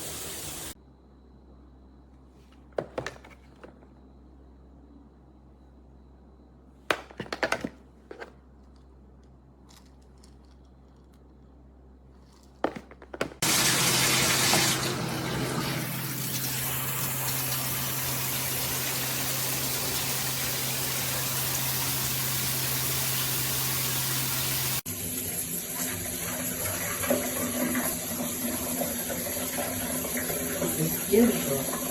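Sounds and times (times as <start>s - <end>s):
shower water spraying: 0.0s - 0.8s, 13.4s - 31.9s.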